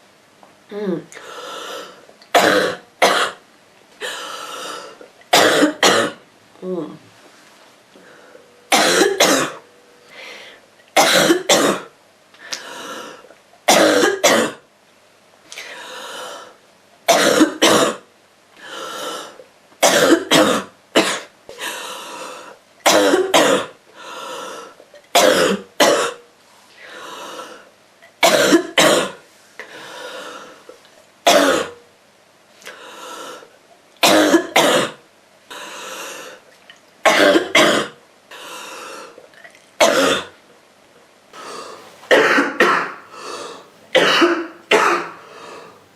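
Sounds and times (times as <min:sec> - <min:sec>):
girl coughing: 0:02.4 - 0:03.4, 0:05.4 - 0:06.2, 0:08.7 - 0:09.6, 0:11.0 - 0:11.9, 0:13.7 - 0:14.6, 0:17.1 - 0:18.0, 0:19.8 - 0:21.3, 0:22.9 - 0:23.8, 0:25.2 - 0:26.2, 0:28.2 - 0:29.2, 0:31.3 - 0:31.8, 0:34.0 - 0:35.0, 0:37.1 - 0:38.0, 0:39.8 - 0:40.3, 0:41.4 - 0:45.2.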